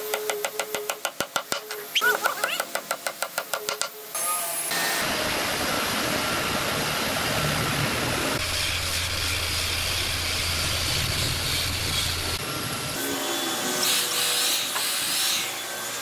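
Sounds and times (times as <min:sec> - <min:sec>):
woodworking power tool running: 0:04.2 - 0:16.0
low hum: 0:05.1 - 0:13.0.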